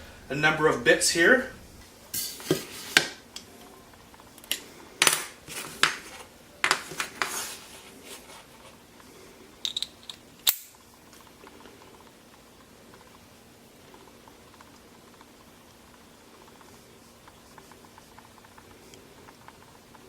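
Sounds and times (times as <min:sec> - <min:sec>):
screwdriver bits clinking: 0:09.6 - 0:10.7.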